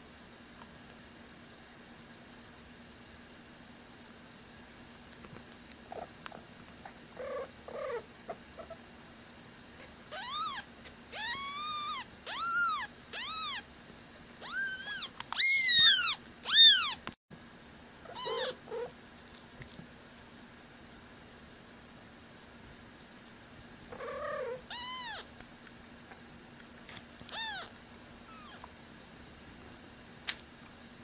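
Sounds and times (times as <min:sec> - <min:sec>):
kitten mewing: 0:10.1 - 0:13.6, 0:14.4 - 0:17.0, 0:23.9 - 0:25.3, 0:27.3 - 0:28.7.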